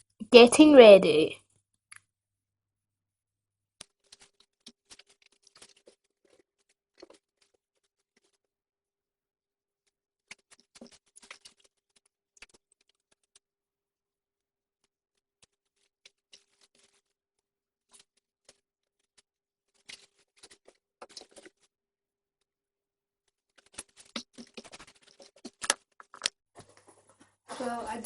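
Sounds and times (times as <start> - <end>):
small objects rustling and clicking: 3.8 - 8.5, 9.8 - 13.4, 15.1 - 17.2, 17.8 - 21.7, 23.2 - 27.4.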